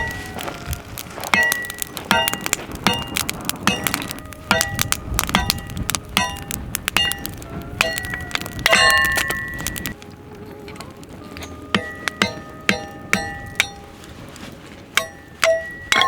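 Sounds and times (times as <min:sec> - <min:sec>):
metal-on-metal strikes ringing: 0:01.3 - 0:09.7, 0:11.3 - 0:14.0, 0:15.0 - 0:16.0.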